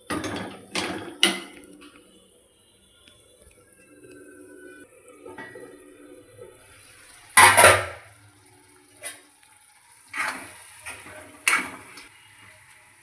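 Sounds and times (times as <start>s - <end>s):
utensils and dishes clattering: 0.1s - 2.0s, 7.4s - 8.0s, 10.2s - 12.0s.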